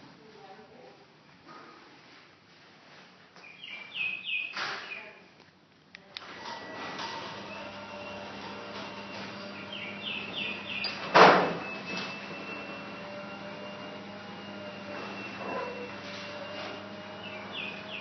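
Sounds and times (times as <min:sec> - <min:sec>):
garage door motor humming: 0:06.2 - 0:18.0.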